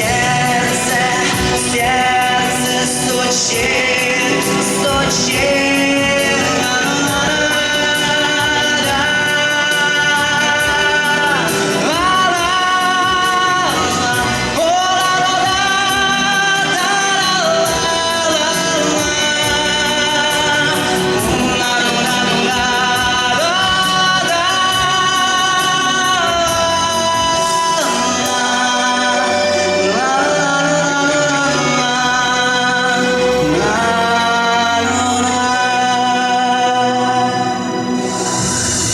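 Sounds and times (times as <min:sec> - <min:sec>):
musical accompaniment: 0:00.0 - 0:38.9
young man singing pop song: 0:00.0 - 0:38.9.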